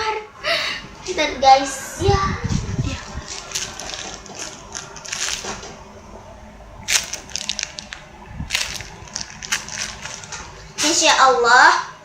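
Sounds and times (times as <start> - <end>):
squishy toys crackling rustles: 2.9 - 5.8, 6.8 - 11.2.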